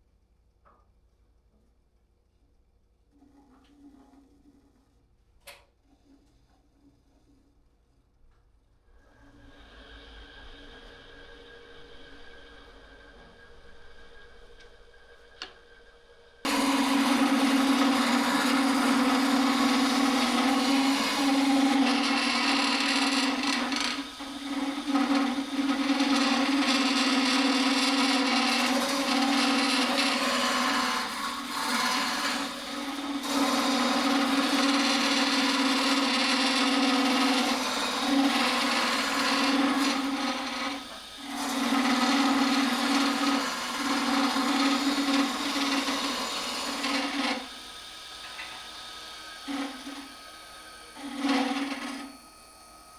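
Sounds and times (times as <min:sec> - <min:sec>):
wood lathe humming: 0:09.0 - 0:52.9
chisel scraping wood: 0:16.4 - 0:47.6, 0:49.4 - 0:50.1, 0:51.0 - 0:52.2.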